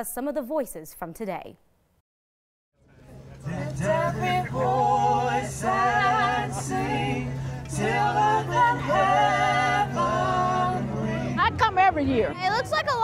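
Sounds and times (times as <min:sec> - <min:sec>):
steady low hum: 0:02.8 - 0:12.4
mixed choir singing: 0:03.4 - 0:11.9.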